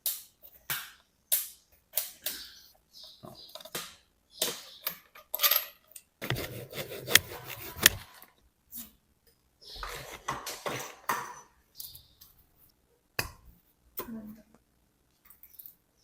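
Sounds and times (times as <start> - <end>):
sharp clicks: 6.2 - 8.1
bicycle headset creaking and grinding: 6.2 - 8.3.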